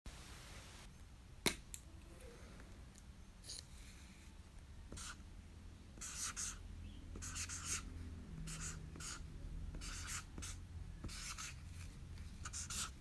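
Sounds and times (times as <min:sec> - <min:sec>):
marker scratching on paper: 0:04.9 - 0:05.2, 0:06.0 - 0:07.9, 0:08.5 - 0:13.0.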